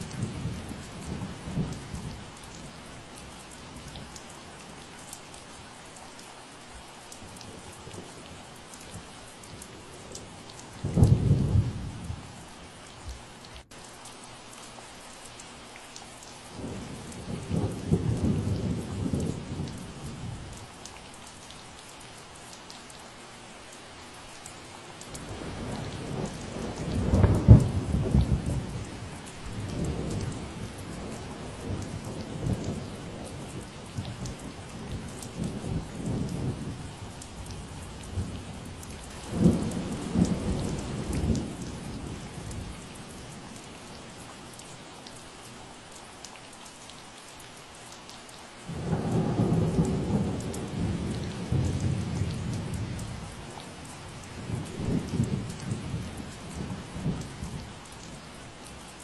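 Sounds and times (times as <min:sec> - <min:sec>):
steady rain falling: 0:00.0 - 0:59.0
low rumbling thunder: 0:10.8 - 0:12.3, 0:16.6 - 0:20.6, 0:25.2 - 0:43.6, 0:48.7 - 0:58.0.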